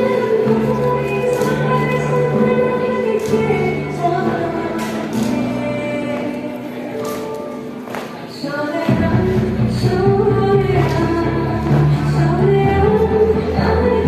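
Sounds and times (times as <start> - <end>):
choir-like singing with chords: 8.4 - 14.0.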